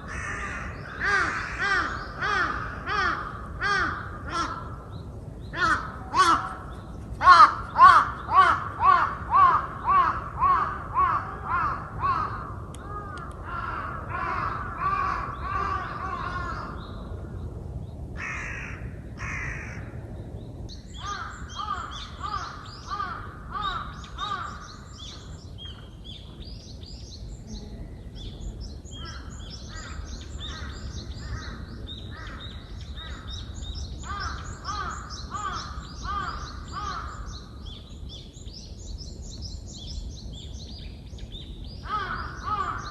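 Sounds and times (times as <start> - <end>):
crows cawing: 0.1 - 4.8, 5.6 - 6.6, 7.2 - 16.7, 18.2 - 19.9, 21.0 - 24.8, 34.0 - 37.4, 41.8 - 42.9.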